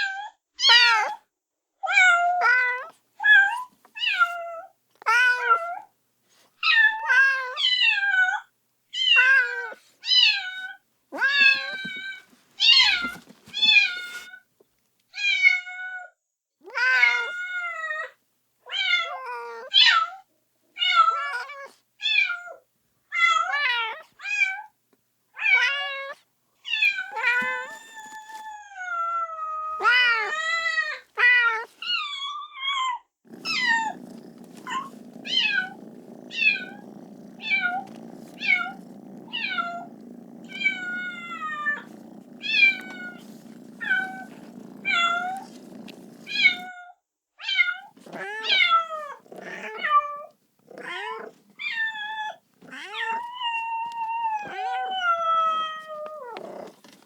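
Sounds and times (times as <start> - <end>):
kitten meowing: 33.3 - 46.7.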